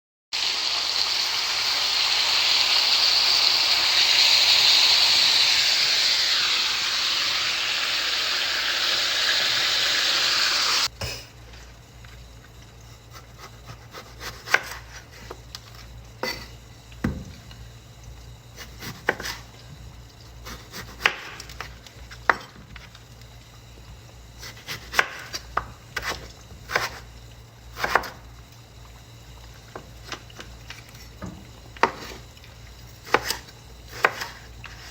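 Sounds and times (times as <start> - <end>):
loud steady hiss: 0.4 - 11.3.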